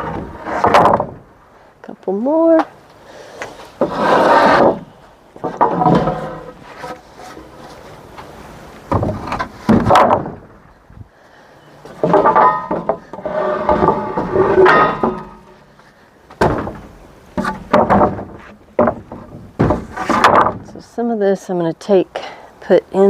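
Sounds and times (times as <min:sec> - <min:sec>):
board scraping against board: 0:00.0 - 0:01.2, 0:03.3 - 0:08.3, 0:11.9 - 0:15.6, 0:16.4 - 0:20.6
wooden boards knocking: 0:00.0 - 0:01.2, 0:05.4 - 0:06.5, 0:08.9 - 0:10.6, 0:11.9 - 0:15.5, 0:16.4 - 0:20.7.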